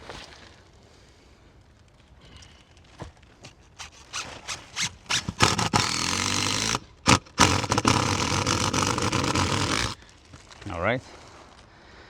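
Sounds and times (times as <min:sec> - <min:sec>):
power drill driving screws: 0:03.7 - 0:10.0.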